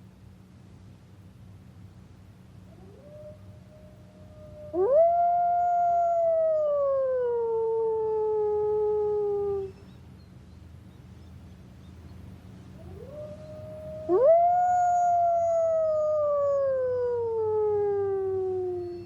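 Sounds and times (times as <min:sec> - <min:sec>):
wolf howling: 0:02.8 - 0:09.7, 0:12.8 - 0:19.0.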